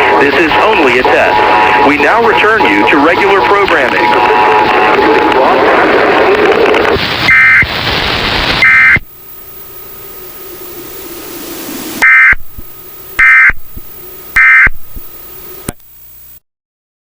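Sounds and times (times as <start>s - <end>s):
buzzy digital data tones: 7.2s - 7.7s, 8.4s - 16.4s
hiss: 10.2s - 12.0s.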